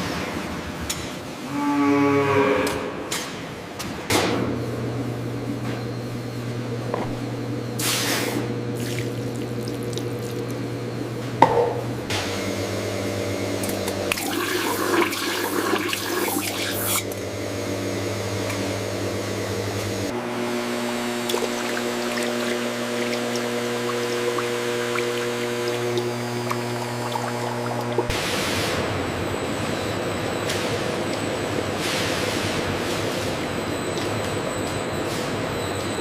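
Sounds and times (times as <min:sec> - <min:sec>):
machine hum: 0:00.0 - 0:36.0
liquid running and splashing: 0:08.7 - 0:10.6, 0:21.2 - 0:28.2.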